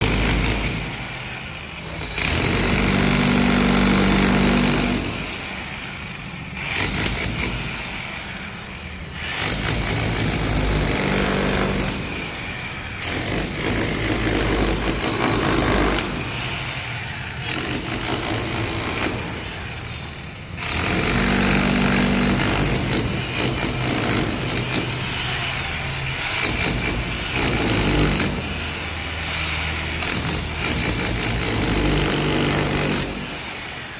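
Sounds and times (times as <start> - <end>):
demolition hammer breaking concrete: 0.0 - 5.5, 6.6 - 7.9, 9.2 - 12.4, 13.0 - 16.4, 17.5 - 19.6, 20.6 - 25.4, 26.0 - 28.6, 29.8 - 33.6.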